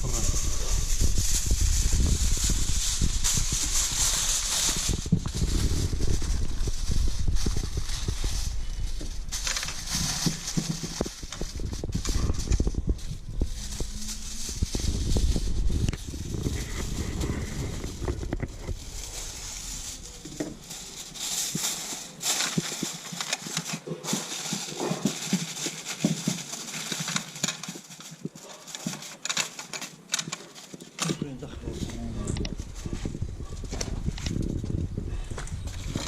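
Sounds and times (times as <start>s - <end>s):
wind rumble on microphone: 0.0s - 20.1s, 31.6s - 36.0s
aluminium foil crinkling: 0.0s - 36.0s.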